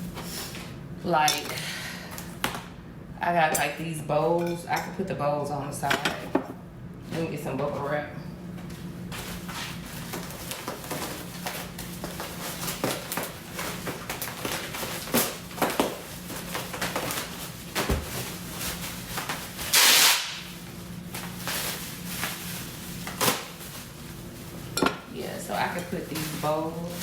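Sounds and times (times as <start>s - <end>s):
bubble wrap crinkling: 8.7s - 27.0s.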